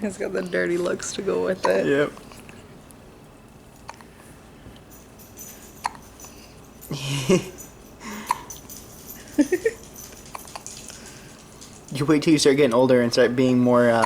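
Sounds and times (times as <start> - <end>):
baby hiccuping: 5.8 - 6.1, 8.2 - 8.6.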